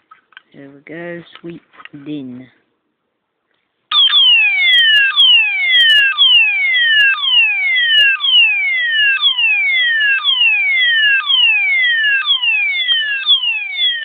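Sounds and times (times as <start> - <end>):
fire alarm falling sweep tone: 3.9 - 14.0.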